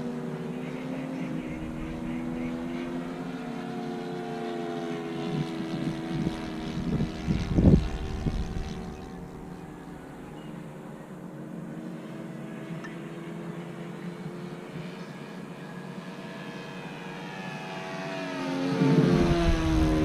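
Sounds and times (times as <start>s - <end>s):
model airplane engine droning: 0.0s - 20.0s.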